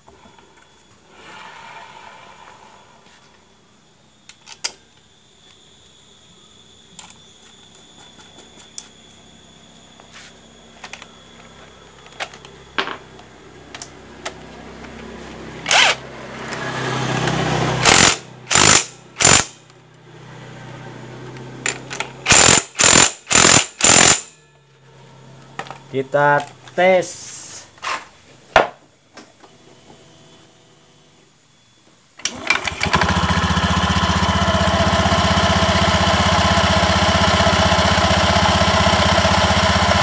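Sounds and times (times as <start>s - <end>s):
impact wrench bursts: 15.6s - 19.7s, 21.7s - 24.4s, 32.2s - 40.0s
hand tools clicking: 17.9s - 19.5s, 21.7s - 24.2s.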